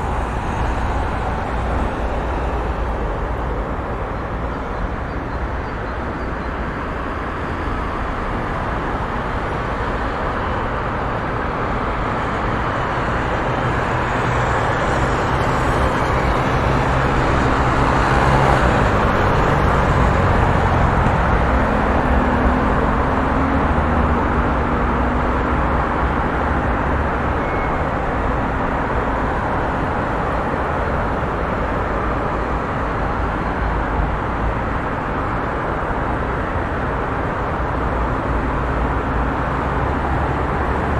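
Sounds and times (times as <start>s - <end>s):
highway traffic: 0.0s - 40.9s.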